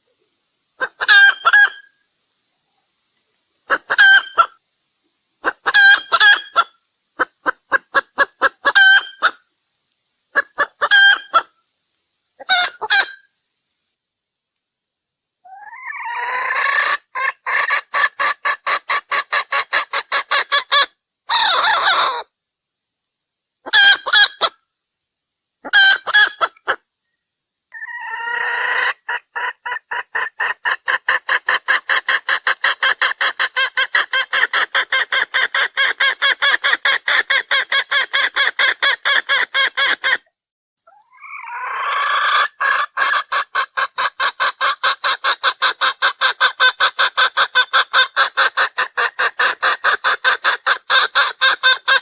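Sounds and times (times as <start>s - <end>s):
hen clucking: 0.8s - 1.9s, 3.6s - 4.6s, 5.4s - 9.4s, 10.3s - 11.5s, 12.4s - 13.3s, 15.5s - 22.3s, 23.6s - 24.6s, 25.6s - 26.9s, 27.7s - 40.2s, 40.9s - 52.0s.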